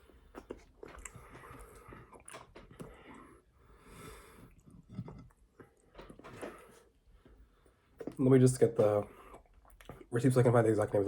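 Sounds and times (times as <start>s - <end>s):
soft breath: 2.8s - 4.7s.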